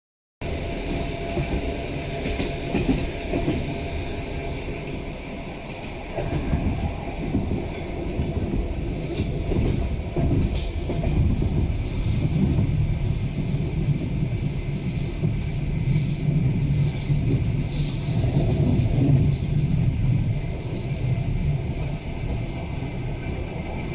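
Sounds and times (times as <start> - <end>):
train wheels rumbling on rails: 0.4 - 23.9
train wheels clattering: 0.6 - 4.3.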